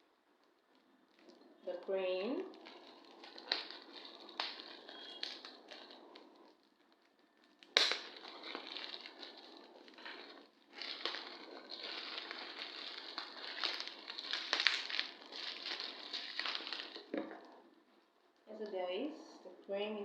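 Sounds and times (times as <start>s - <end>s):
packaging being torn and crumpled: 2.4s - 17.6s.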